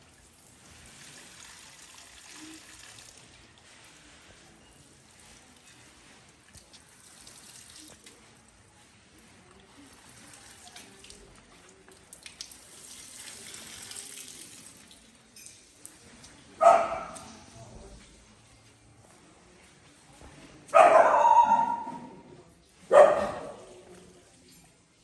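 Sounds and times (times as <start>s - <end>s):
water running faintly: 0.0s - 25.0s
dog barking: 16.6s - 17.4s, 20.7s - 22.2s, 22.9s - 23.7s.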